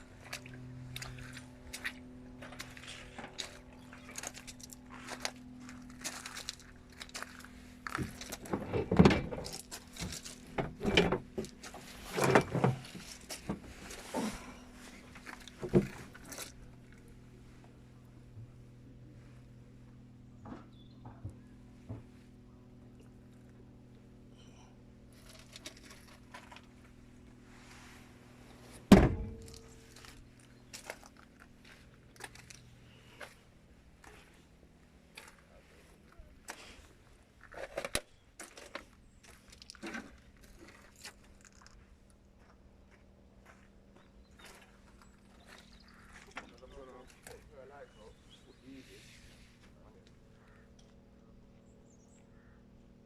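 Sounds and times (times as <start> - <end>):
low steady hum: 0.0 - 53.0
knocks thuds and rattles: 28.9 - 29.6.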